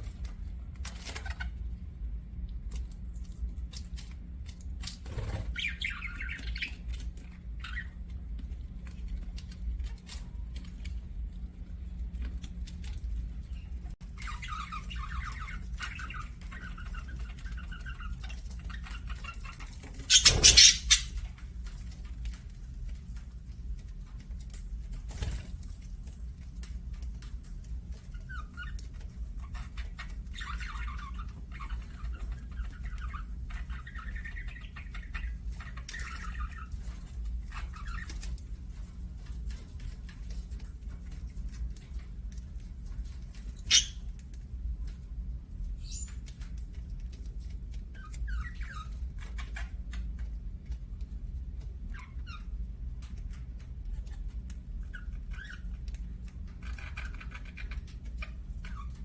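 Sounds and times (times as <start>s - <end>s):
budgerigars chirping and warbling: 1.0s - 1.6s, 5.0s - 8.1s, 13.5s - 22.1s, 28.0s - 38.5s, 43.0s - 44.4s, 45.8s - 50.3s, 51.8s - 59.0s.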